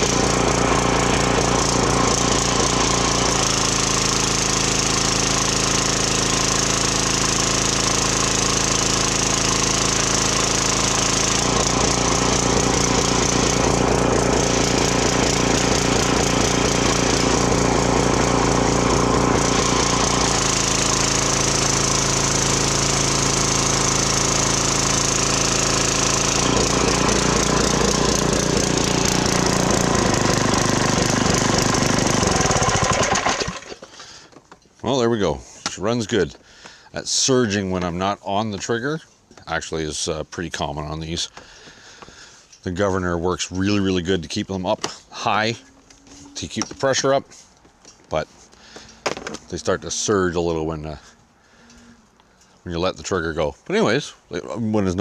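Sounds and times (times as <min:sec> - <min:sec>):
pressure washer engine running: 0:00.0 - 0:34.3.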